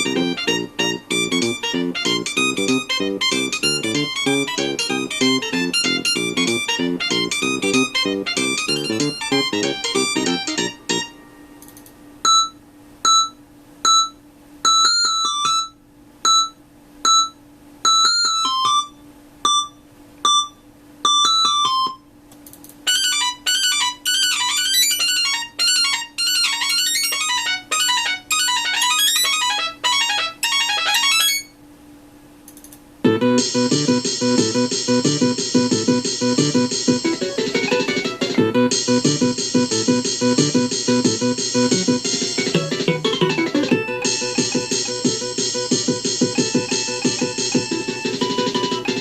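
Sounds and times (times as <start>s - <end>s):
beeping ringtone tune: 0.0s - 11.2s, 12.3s - 22.0s, 22.9s - 31.5s, 33.1s - 49.0s
fast busy ringtone melody: 0.0s - 11.2s, 22.9s - 31.5s, 33.1s - 49.0s.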